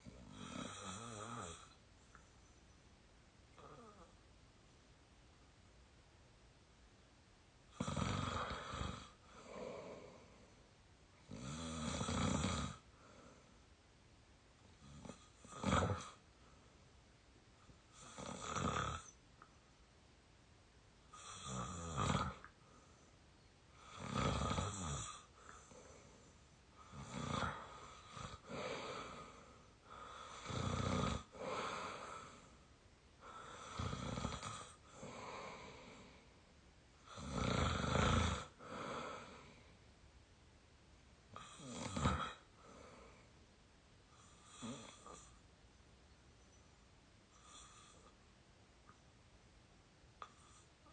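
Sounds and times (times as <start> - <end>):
person snoring: 0.0 - 1.8, 3.6 - 4.1, 7.7 - 10.5, 11.3 - 13.4, 14.8 - 16.2, 17.9 - 19.2, 21.2 - 22.5, 23.8 - 26.0, 26.8 - 32.6, 33.2 - 36.2, 37.0 - 39.6, 41.4 - 43.3, 44.2 - 45.4.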